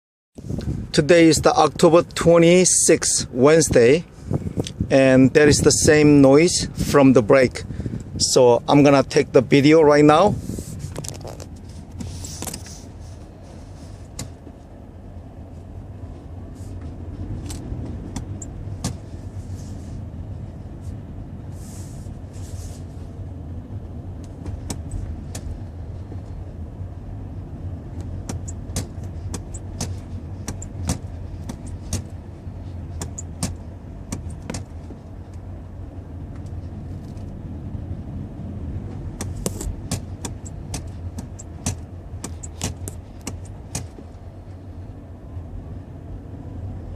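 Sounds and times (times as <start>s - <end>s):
low car rumble: 0.4s - 46.9s
sharp irregular clicks: 39.2s - 44.0s.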